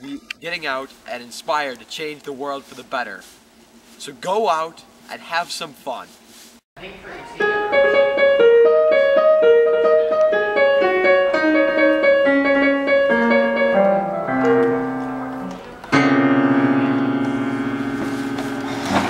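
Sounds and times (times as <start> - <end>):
piano music: 6.8 - 19.0.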